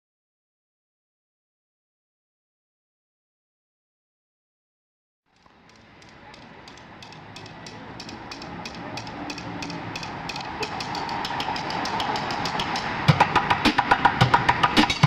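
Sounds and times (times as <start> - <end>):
drumsticks clicking: 5.4 - 15.0
noisy background: 5.4 - 15.0
bucket drumming: 6.7 - 15.0.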